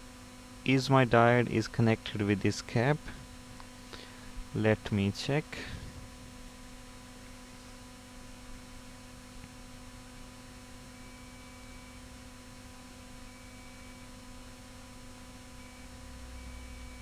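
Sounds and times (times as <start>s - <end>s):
electrical mains hum: 0.0s - 17.0s
faint high beep: 13.3s - 14.1s, 15.6s - 17.0s.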